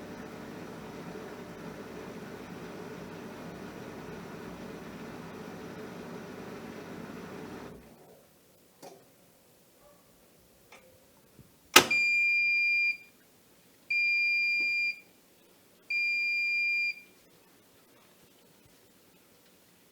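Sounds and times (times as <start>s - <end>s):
washing machine click: 11.8s - 12.2s.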